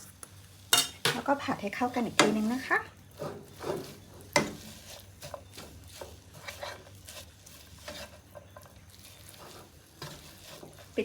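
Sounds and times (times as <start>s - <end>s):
utensil scraping frying pan: 0.7s - 11.0s.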